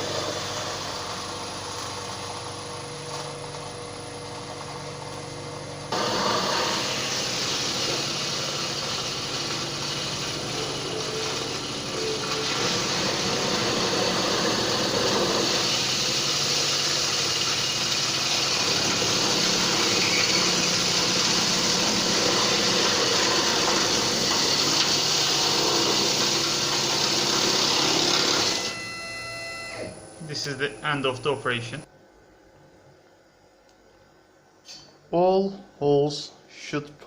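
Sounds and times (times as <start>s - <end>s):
cnc router drilling sheet metal: 5.9s - 28.9s.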